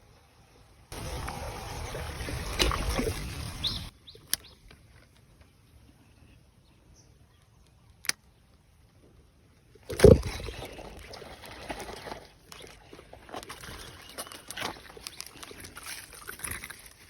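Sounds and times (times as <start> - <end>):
water sloshing and splashing: 0.9 - 5.2, 9.8 - 17.0.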